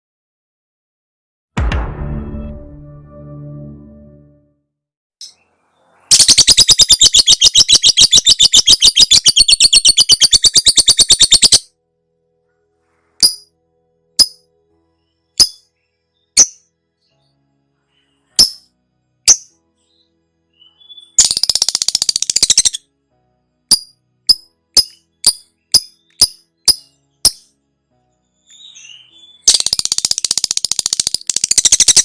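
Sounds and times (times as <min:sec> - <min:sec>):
bird sharp chirps: 0:05.2 - 0:11.7, 0:19.3 - 0:22.8, 0:23.7 - 0:27.5, 0:28.4 - 0:32.0
bird harsh chattering trill: 0:06.1 - 0:11.6, 0:20.9 - 0:22.8.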